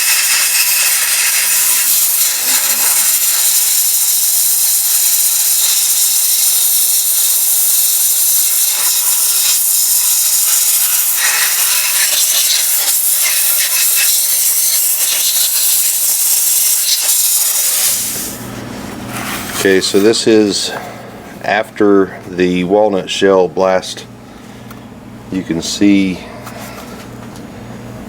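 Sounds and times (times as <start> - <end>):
media blaster hissing: 0.0 - 18.5.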